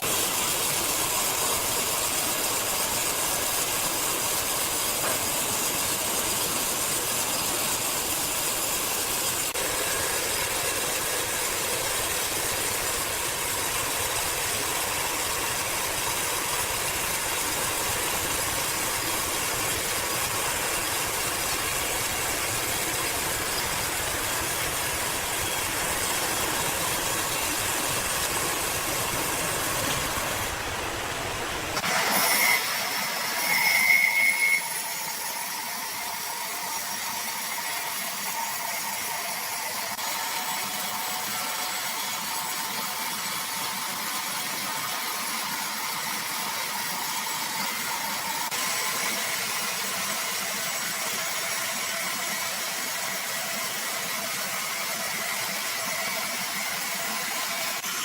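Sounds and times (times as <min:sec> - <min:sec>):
high saw whine: 0:00.0 - 0:43.2
sawmill machinery sawing log: 0:00.0 - 0:43.2.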